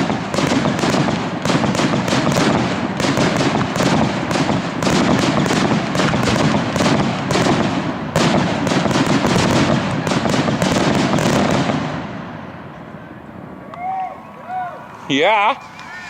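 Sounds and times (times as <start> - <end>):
fireworks banging and crackling: 0.0 - 13.5.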